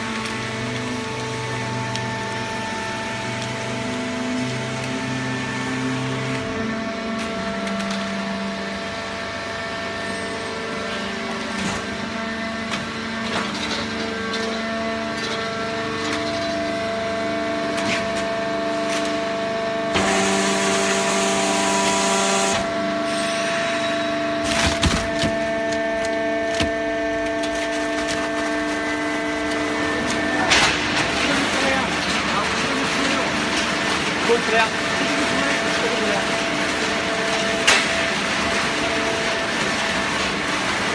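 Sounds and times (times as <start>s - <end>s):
hydraulic press motor hum: 0.0s - 34.2s
paper cracking and creaking: 24.4s - 37.8s.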